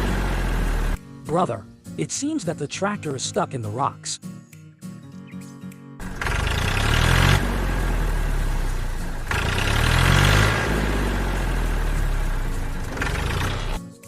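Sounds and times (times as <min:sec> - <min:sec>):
tractor engine revving: 0:00.0 - 0:01.0, 0:06.0 - 0:13.8.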